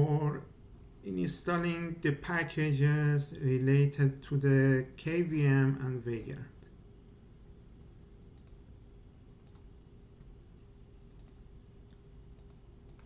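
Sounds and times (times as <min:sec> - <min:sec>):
low steady hum: 0:00.0 - 0:13.0
computer keys clicking: 0:08.4 - 0:08.6, 0:09.4 - 0:13.0.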